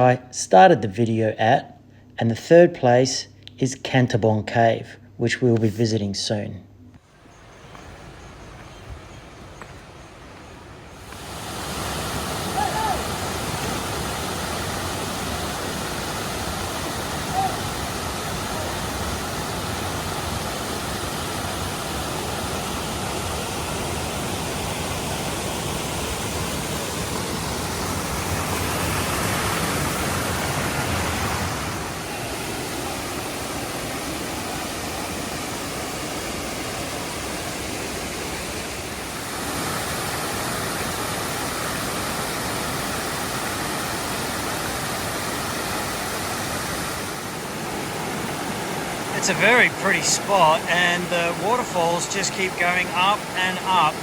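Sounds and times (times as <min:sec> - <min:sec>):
waterfall roaring: 0:10.8 - 0:54.0.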